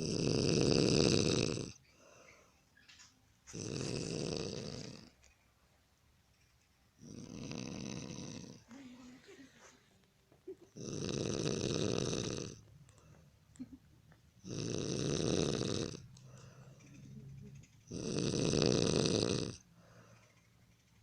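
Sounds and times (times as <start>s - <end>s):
man snoring heavily: 0.0s - 1.8s, 3.5s - 5.1s, 7.0s - 8.6s, 10.8s - 12.6s, 14.4s - 16.0s, 17.9s - 19.6s
soft breaths: 1.8s - 5.4s, 7.7s - 10.7s, 11.8s - 13.5s, 14.1s - 17.8s, 19.6s - 21.0s.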